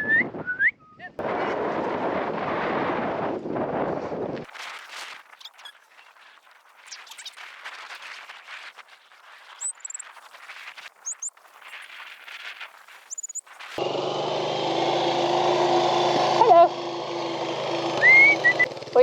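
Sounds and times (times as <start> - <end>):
birds chirping: 17.5 - 19.0.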